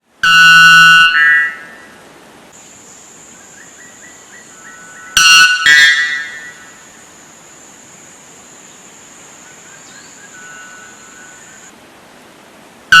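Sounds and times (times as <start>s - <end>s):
bird calling in horn-like notes: 0.2s - 2.0s, 4.4s - 6.8s, 10.1s - 11.7s
high insect trill: 2.6s - 11.7s.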